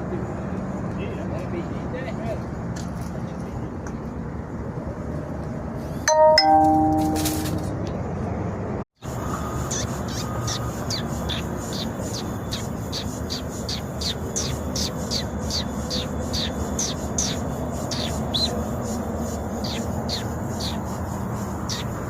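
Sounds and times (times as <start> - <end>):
ringing chime tones: 6.1 - 7.6
short high chirps: 6.1 - 7.6.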